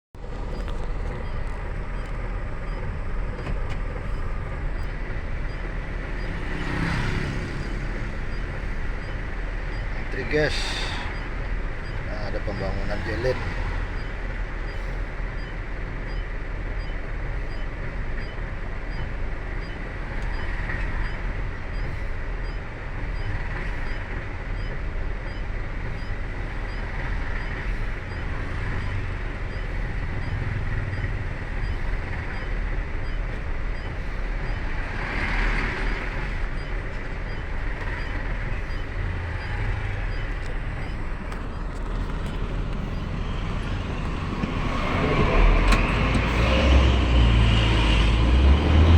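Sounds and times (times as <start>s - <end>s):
vehicle engines rumbling: 0.0s - 48.9s
faint high beep: 5.5s - 14.8s.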